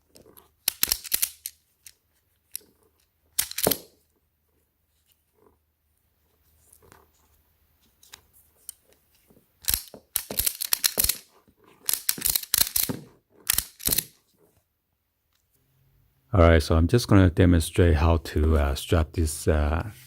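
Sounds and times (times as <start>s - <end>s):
ratchet strap scraping: 0.1s - 3.9s, 9.6s - 14.6s.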